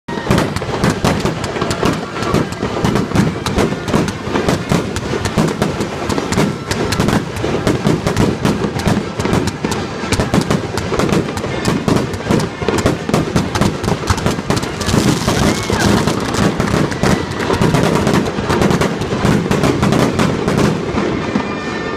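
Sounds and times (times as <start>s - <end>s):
fireworks bangs and crackles: 0.1s - 21.9s.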